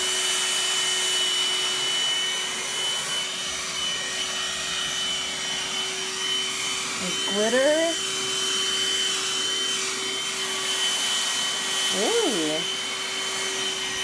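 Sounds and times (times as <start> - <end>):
handheld vacuum whining: 0.0 - 14.0.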